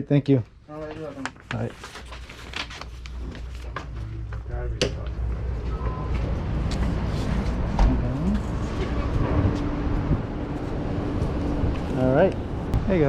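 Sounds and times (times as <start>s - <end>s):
traffic rumble: 0.5s - 13.0s
engine hum: 3.8s - 12.9s.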